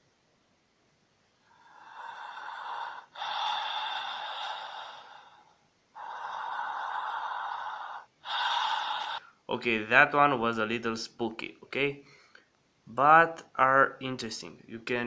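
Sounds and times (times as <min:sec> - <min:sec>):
long breath-like hisses: 0:01.4 - 0:09.4.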